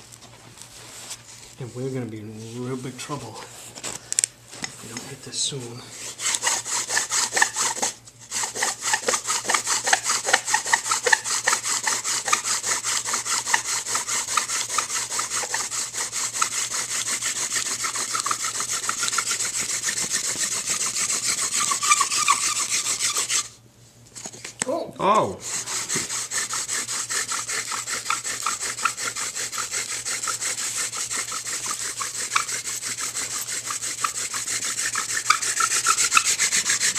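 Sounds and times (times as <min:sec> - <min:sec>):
wooden spindle rubbing and squeaking: 0:06.0 - 0:23.5, 0:25.4 - 0:36.9.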